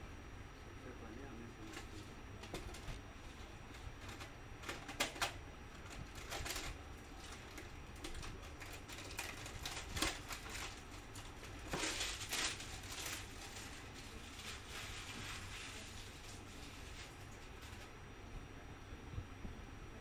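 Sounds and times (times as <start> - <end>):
clicks and knocks of hard objects: 1.7 - 14.6
rustling scrape: 8.8 - 17.9.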